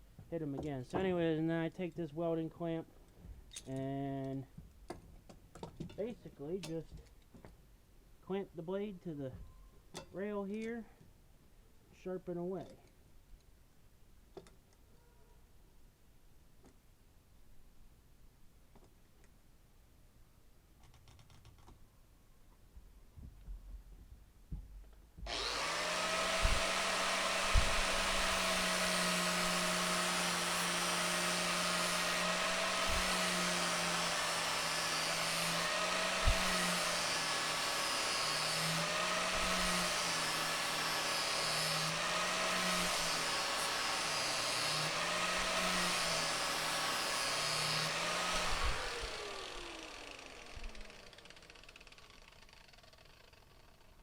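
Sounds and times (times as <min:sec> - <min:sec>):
angle grinder grinding steel: 0:25.3 - 0:54.0.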